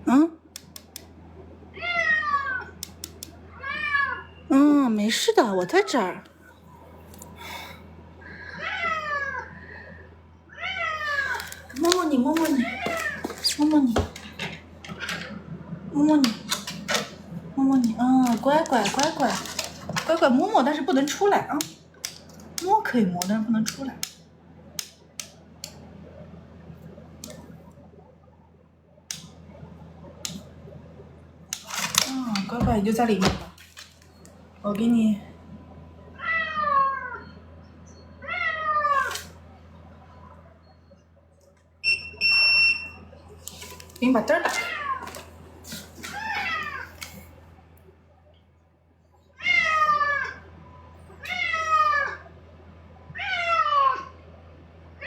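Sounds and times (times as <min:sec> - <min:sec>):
fan humming: 0:00.0 - 0:55.0
sharp clicks: 0:00.5 - 0:01.1, 0:02.8 - 0:03.4
cat meowing: 0:03.5 - 0:04.4, 0:49.4 - 0:50.4.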